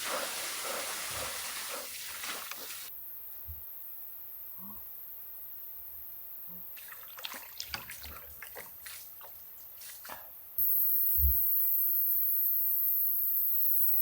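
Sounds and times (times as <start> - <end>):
loud high hiss: 0.0 - 2.9
water splashing and dripping: 0.0 - 2.9, 6.8 - 10.5.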